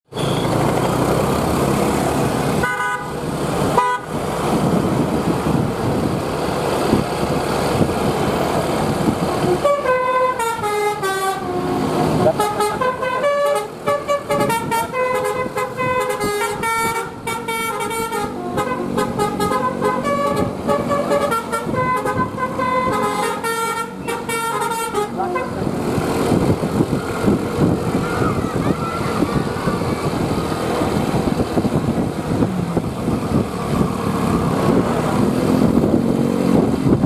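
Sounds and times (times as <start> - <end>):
bus and road noise: 0.0 - 37.0
short horn blasts: 2.6 - 3.1, 3.8 - 4.1, 9.4 - 25.7
multi-tone musical bus horn: 2.6 - 4.2, 9.3 - 25.8.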